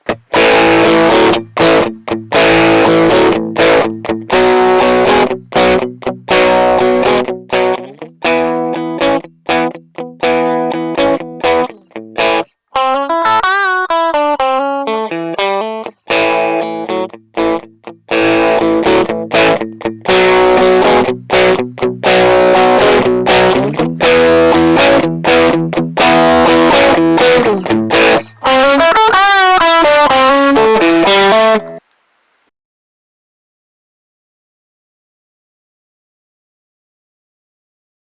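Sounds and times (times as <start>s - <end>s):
overdriven electric guitar: 0.0s - 31.8s.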